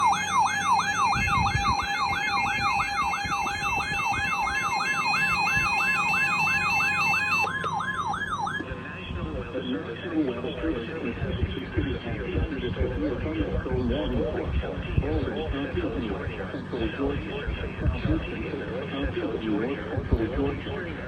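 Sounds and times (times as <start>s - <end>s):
steady alarm tone: 0.0s - 9.2s
high-low warble tone: 0.0s - 9.4s
siren-like wailing alarm: 0.0s - 15.5s.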